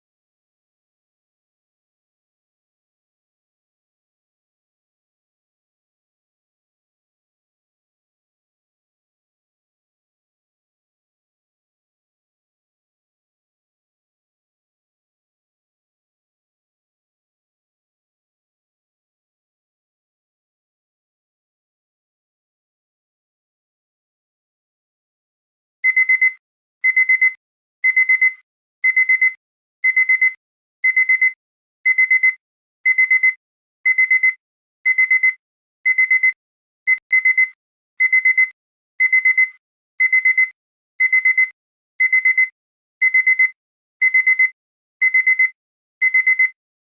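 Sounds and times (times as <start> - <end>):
timer alarm beeping: 25.8 - 46.6.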